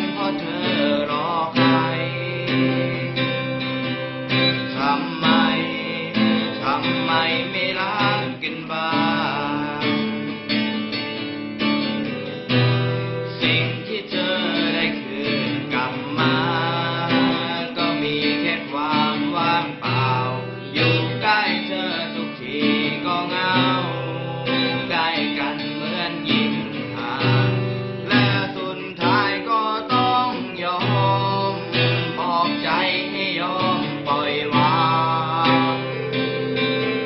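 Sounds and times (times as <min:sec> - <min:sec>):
acoustic guitar strummed and picked: 0:00.0 - 0:37.0.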